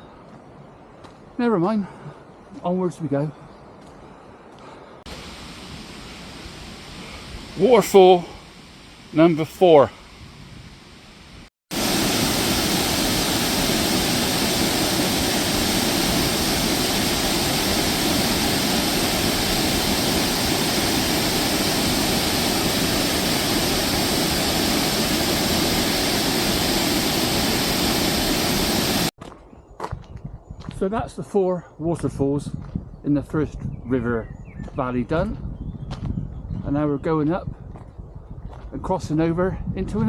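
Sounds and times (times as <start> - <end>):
waterfall rushing: 5.1 - 9.9, 11.0 - 29.1.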